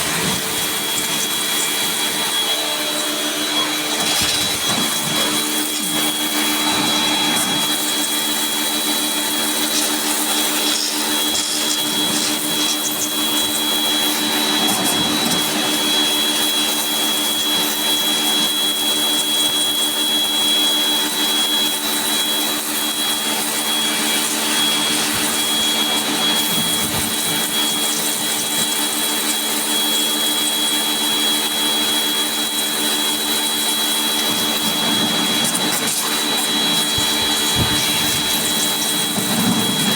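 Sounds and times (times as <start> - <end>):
electric motor whining: 0.0 - 18.7, 21.9 - 28.8, 34.1 - 39.9.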